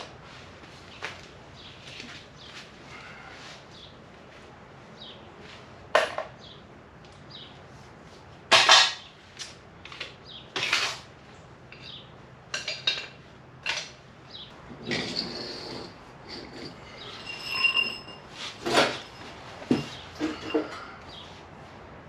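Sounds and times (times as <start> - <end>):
metal tools clanking: 11.7 - 14.0, 14.8 - 21.2.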